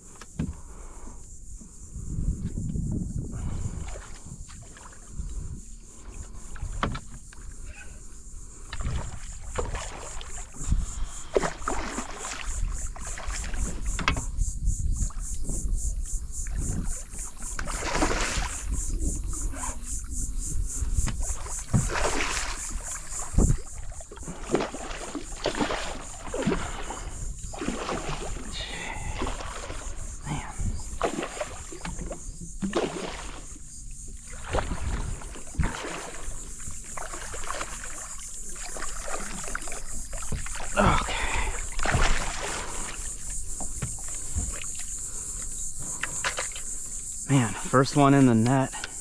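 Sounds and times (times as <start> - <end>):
wind rumble on microphone: 0.0 - 11.3, 12.4 - 24.5, 25.9 - 32.8, 33.4 - 36.5
water splashing around kayak: 0.0 - 49.0.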